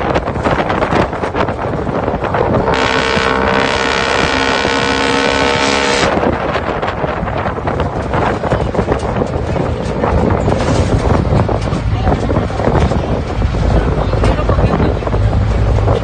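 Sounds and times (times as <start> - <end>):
diesel engine exhaust pulsing: 0.0 - 16.0
steady pitched tone: 2.3 - 7.0.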